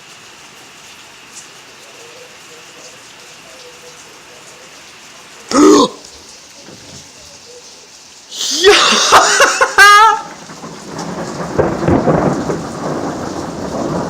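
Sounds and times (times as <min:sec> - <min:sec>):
rain falling: 0:00.0 - 0:14.0
person crying out: 0:05.5 - 0:06.1, 0:08.3 - 0:10.4
thunder cracking and rumbling: 0:09.0 - 0:14.0.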